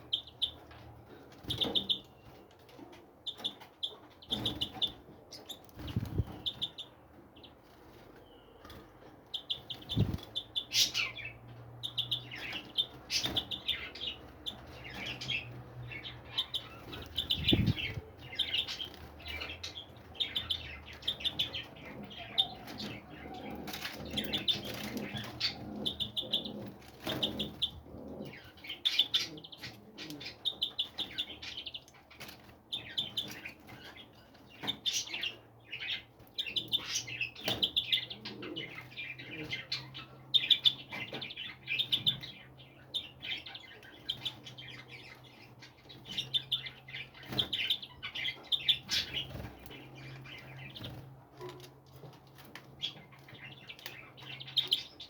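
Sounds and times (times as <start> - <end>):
songbirds chirping: 0.0 - 55.0.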